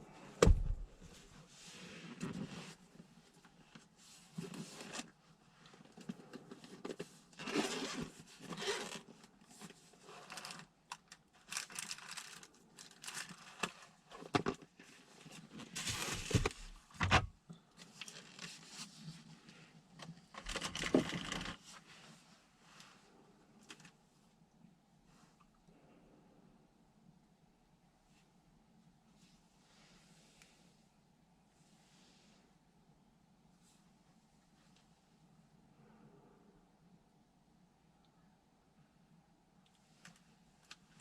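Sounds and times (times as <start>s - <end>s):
rustling and crinkling handling noises: 0.0s - 24.2s.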